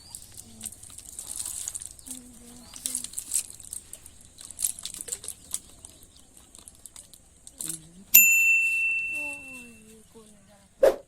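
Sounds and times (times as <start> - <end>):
crackling rustles: 0.0 - 8.2.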